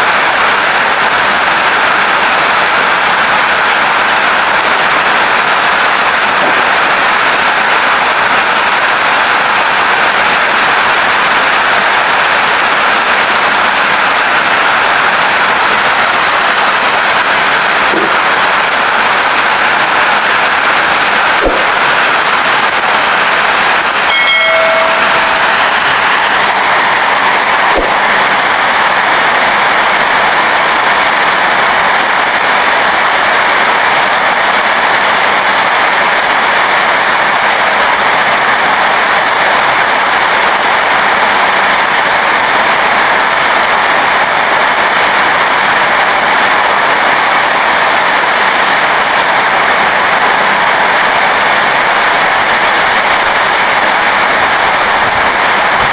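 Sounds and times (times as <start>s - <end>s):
heavy rain hiss: 0.0s - 55.9s
short pitched tone: 24.1s - 26.1s.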